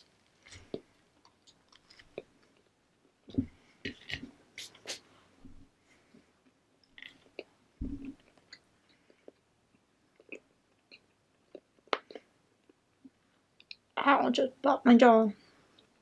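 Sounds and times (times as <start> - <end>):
chewing with soft crunches: 0.2 - 4.2.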